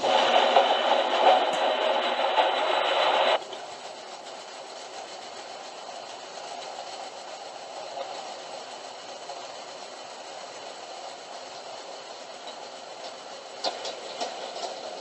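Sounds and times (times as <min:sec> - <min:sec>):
band saw running: 0:00.0 - 0:03.4.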